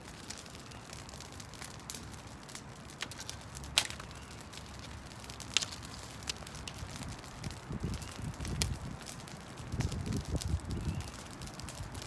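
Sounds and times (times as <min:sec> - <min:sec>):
twigs snapping: 0:02.9 - 0:07.2.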